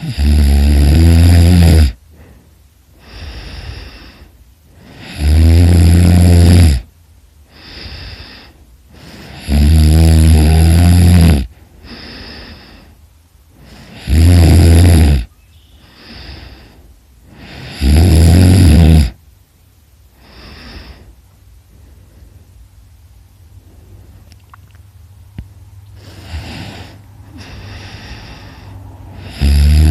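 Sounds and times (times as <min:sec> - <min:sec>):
person snoring: 0:00.0 - 0:02.3, 0:03.0 - 0:06.9, 0:07.5 - 0:13.0, 0:13.6 - 0:15.3, 0:15.9 - 0:19.2, 0:26.0 - 0:29.9.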